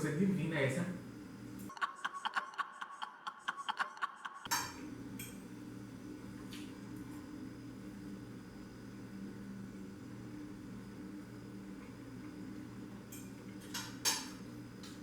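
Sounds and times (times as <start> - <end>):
steady low hum: 0.0 - 1.7, 4.5 - 15.0
cutlery clinking against plate: 13.2 - 14.4.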